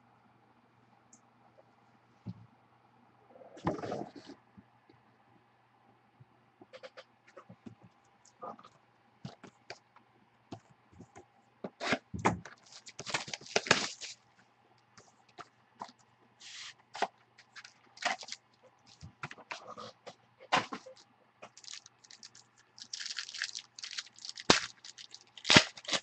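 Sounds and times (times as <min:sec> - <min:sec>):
faint low hum: 0:00.0 - 0:26.0
cards clicking and rustling: 0:12.5 - 0:14.2
packs tearing and crinkling: 0:12.5 - 0:14.2, 0:17.6 - 0:19.0, 0:20.9 - 0:26.0.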